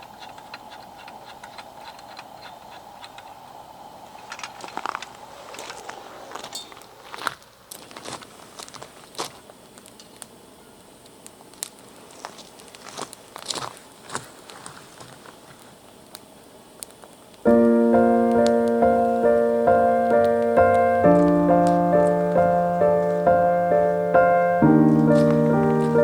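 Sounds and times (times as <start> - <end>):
background piano music: 17.5 - 26.0.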